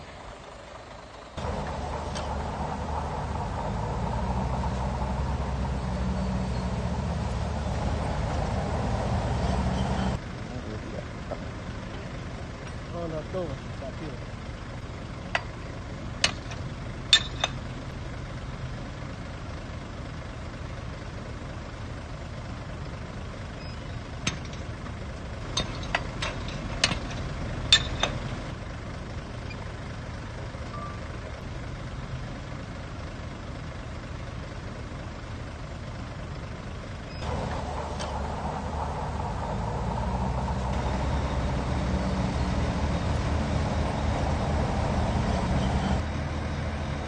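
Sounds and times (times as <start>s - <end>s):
heavy diesel machinery running: 0.0s - 47.0s
sharp metallic clanks: 16.2s - 17.7s, 25.5s - 28.4s.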